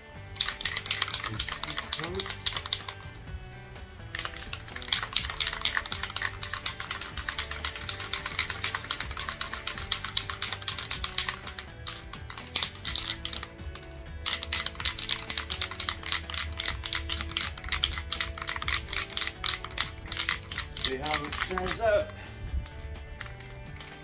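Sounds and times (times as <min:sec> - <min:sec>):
background music with bass: 0:00.0 - 0:24.0
spray can rattling: 0:00.2 - 0:24.0.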